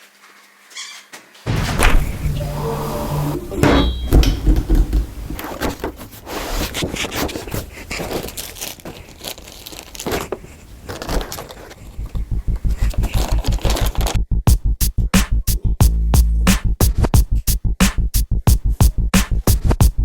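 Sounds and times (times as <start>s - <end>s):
cardboard and plastic crinkling: 4.2s - 14.2s.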